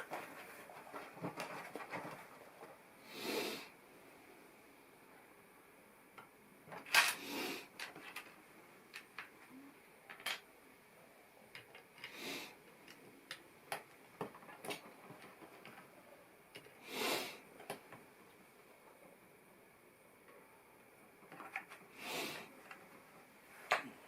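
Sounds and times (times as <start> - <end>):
plastic pieces clicking: 6.7 - 7.2.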